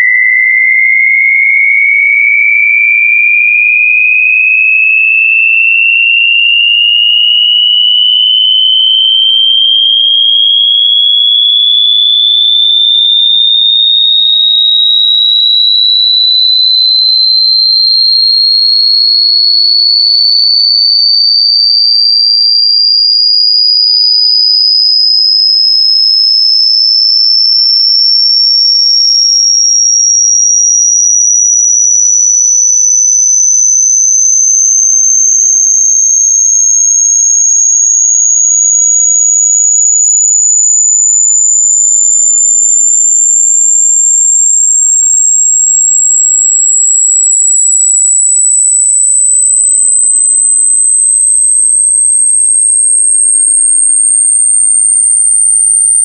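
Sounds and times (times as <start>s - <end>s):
electronic sine tone sweep: 6.3s - 11.4s, 24.2s - 56.0s.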